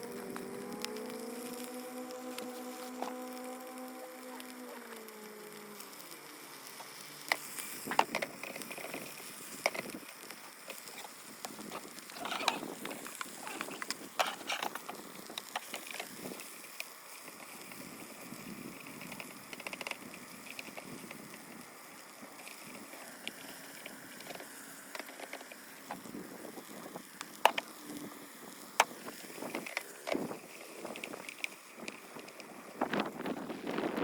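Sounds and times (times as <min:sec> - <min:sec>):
faint steady hiss: 0:00.0 - 0:34.0
irregular clicks and light knocks: 0:06.8 - 0:17.8, 0:18.9 - 0:21.6, 0:22.4 - 0:26.0.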